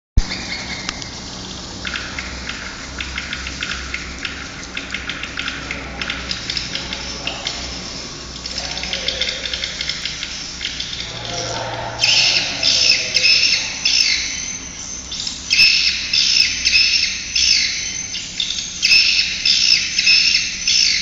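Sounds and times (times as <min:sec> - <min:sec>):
bird chirping and twittering: 0:00.2 - 0:01.2, 0:01.8 - 0:21.0
steady low hum: 0:00.2 - 0:16.8.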